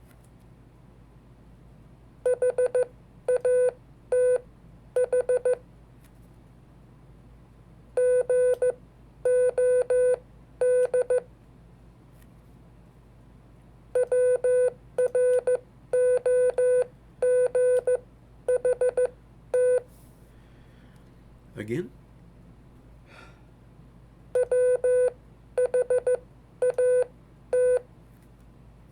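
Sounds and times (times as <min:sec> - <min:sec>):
morse code beeps: 0:02.3 - 0:04.4, 0:05.0 - 0:05.6, 0:08.0 - 0:11.2, 0:14.0 - 0:19.8, 0:24.4 - 0:27.8.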